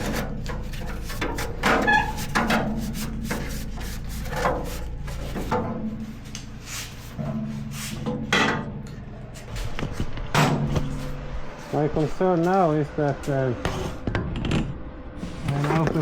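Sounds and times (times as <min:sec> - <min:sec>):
scraping on metal: 0:00.0 - 0:12.6
steady low hum: 0:00.0 - 0:16.0.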